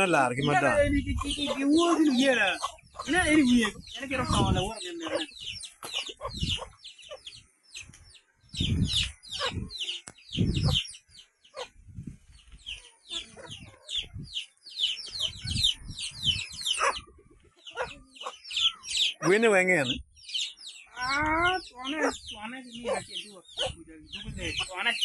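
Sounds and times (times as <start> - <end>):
chickens calling: 0.0 - 25.0.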